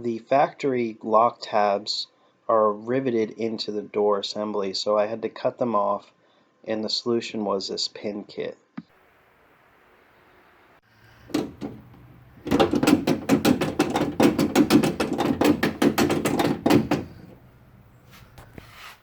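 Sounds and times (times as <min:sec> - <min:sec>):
window regulator clicking: 0:11.3 - 0:17.4.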